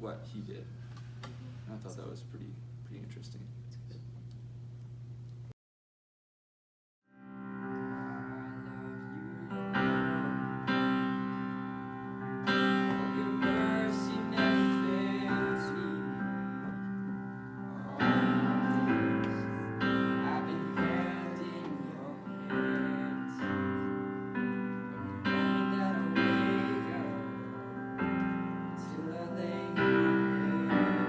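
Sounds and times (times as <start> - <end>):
slow piano chords: 7.1 - 31.0.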